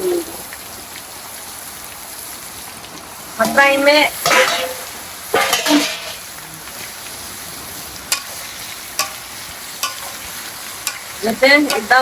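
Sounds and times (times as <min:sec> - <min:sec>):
food sizzling in a pan: 0:00.0 - 0:12.0
utensil scraping pan: 0:03.4 - 0:06.3, 0:08.1 - 0:12.0
utensil clicking against pan: 0:09.0 - 0:12.0.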